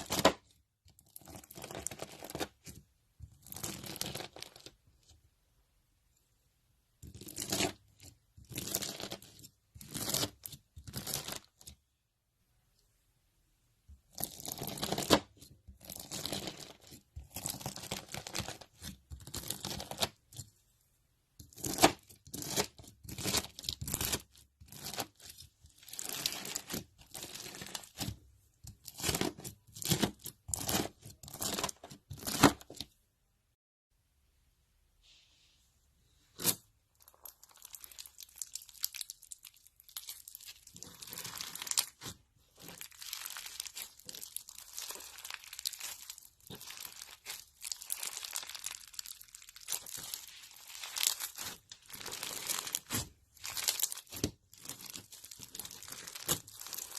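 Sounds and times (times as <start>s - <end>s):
slime squelching and crackling: 14.0s - 20.5s, 21.4s - 32.8s, 36.4s - 56.9s.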